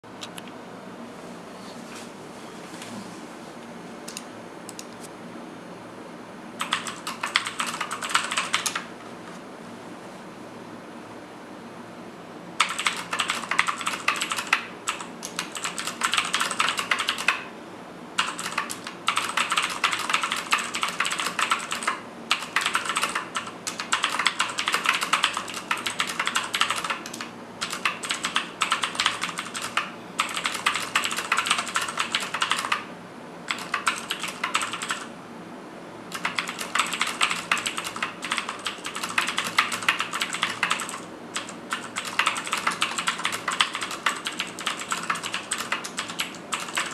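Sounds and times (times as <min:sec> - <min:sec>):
fast typing on clicky keyboard: 0:06.6 - 0:08.9, 0:12.6 - 0:17.5, 0:18.2 - 0:32.9, 0:33.5 - 0:35.1, 0:36.1 - 0:46.9.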